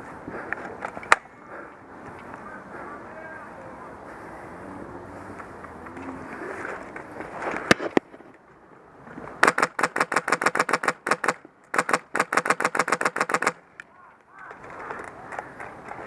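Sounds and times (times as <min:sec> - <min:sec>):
airsoft gun bursts: 0:09.4 - 0:13.6
single airsoft shots: 0:09.4 - 0:13.6.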